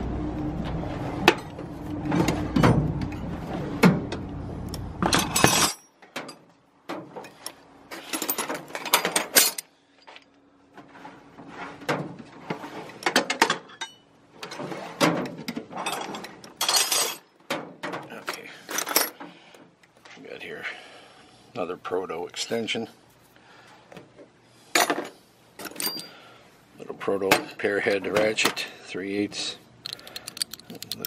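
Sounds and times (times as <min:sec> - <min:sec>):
low rumble: 0:00.0 - 0:05.3
metal tools clinking: 0:05.1 - 0:06.5, 0:07.3 - 0:09.7, 0:13.5 - 0:14.0, 0:15.8 - 0:17.3, 0:18.3 - 0:19.2, 0:24.8 - 0:26.2, 0:29.9 - 0:31.0.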